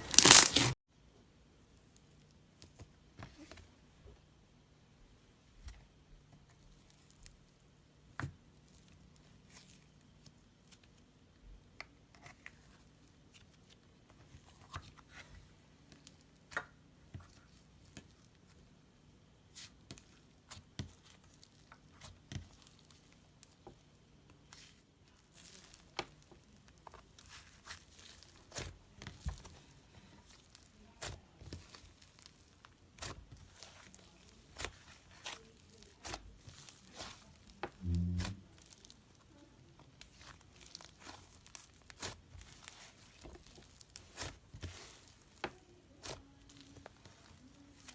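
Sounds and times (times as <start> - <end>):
slime popping and crackling: 0.0 - 0.8.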